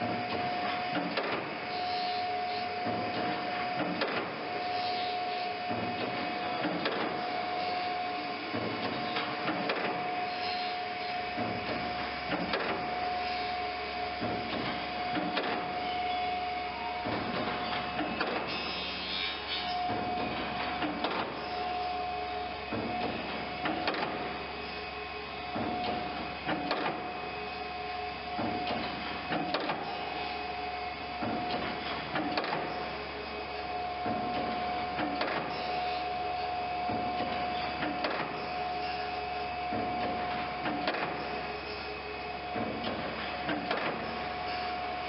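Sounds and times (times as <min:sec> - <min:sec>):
grinding machine whine and hum: 0:00.0 - 0:45.0.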